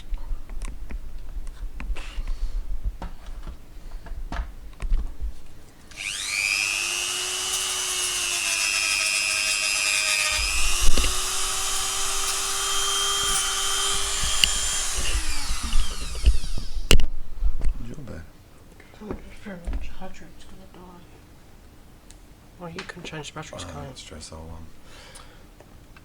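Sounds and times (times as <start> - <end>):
power tool motor whirring: 5.9 - 17.0.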